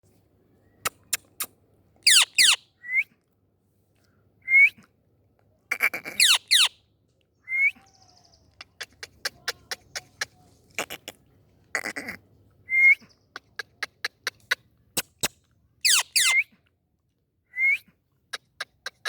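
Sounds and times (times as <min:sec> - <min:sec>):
parakeet calling: 0:02.1 - 0:02.6, 0:05.8 - 0:06.7, 0:15.8 - 0:16.4.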